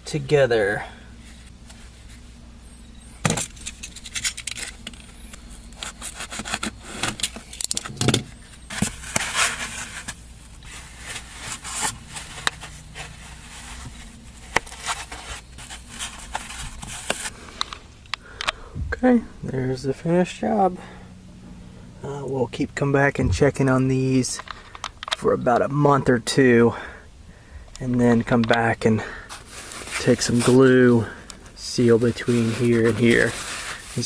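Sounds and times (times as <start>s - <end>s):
scraping and rubbing: 3.0s - 17.4s, 29.3s - 34.0s
parts clicking and knocking: 3.2s - 9.3s.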